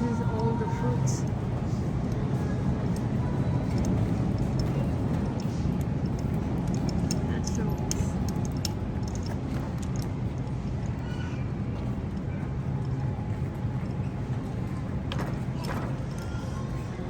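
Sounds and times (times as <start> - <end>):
light clicks and clatters: 0.0 - 17.0
murmur of voices: 10.8 - 17.0.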